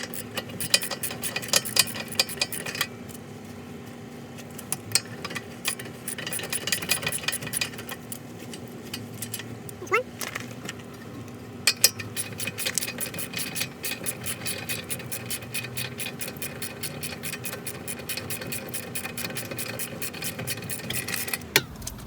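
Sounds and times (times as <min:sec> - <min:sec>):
ratchet wrench clicking: 0:00.0 - 0:02.9, 0:05.0 - 0:08.2, 0:11.7 - 0:22.0.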